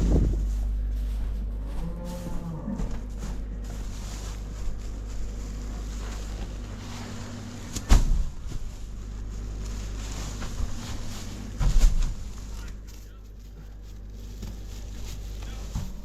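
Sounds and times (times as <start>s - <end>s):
low machine hum: 0.0s - 16.0s
straw bale landing with thump: 3.2s - 8.8s, 9.9s - 12.4s.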